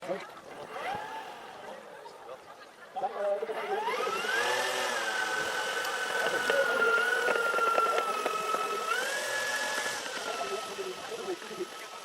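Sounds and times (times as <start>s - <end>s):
model plane motors whining: 0.5s - 1.9s, 3.4s - 12.0s.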